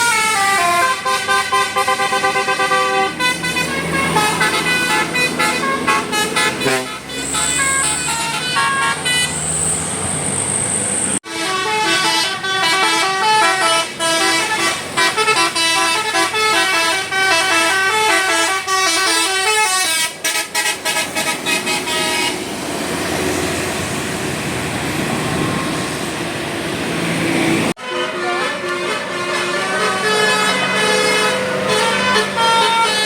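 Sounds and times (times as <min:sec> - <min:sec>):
multi-tone bus horn tune: 0:00.0 - 0:09.6, 0:11.2 - 0:22.6, 0:27.7 - 0:33.0
vehicle and road noise: 0:00.0 - 0:33.0.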